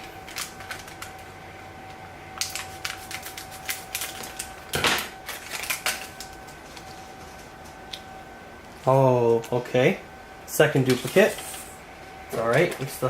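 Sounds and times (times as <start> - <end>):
package crinkling and crackling: 0.2 - 1.3, 2.4 - 7.0.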